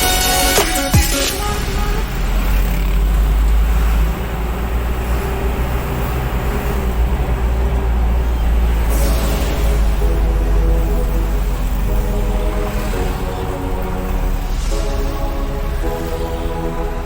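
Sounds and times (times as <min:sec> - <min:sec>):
road and traffic noise: 0:00.0 - 0:17.0
vehicle engine rumble: 0:01.3 - 0:17.0.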